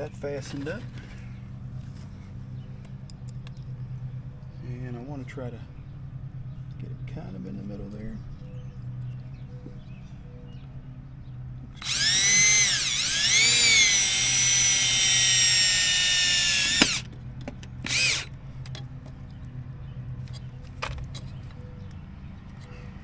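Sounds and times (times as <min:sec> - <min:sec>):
drill click: 0:11.8 - 0:17.1, 0:17.8 - 0:18.4
power drill driving a screw: 0:11.8 - 0:17.1, 0:17.8 - 0:18.3.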